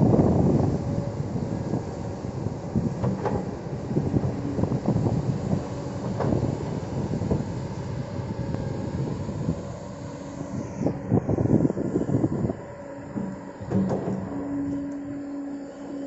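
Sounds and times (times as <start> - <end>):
excavator diesel engine running: 0.0 - 16.0
metal clanks and knocks: 13.1 - 14.4.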